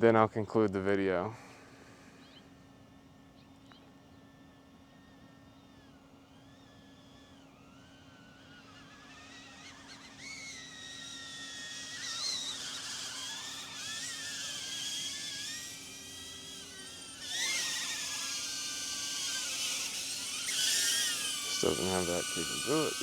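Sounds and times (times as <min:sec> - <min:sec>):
drone propellers whining: 0:04.8 - 0:23.0.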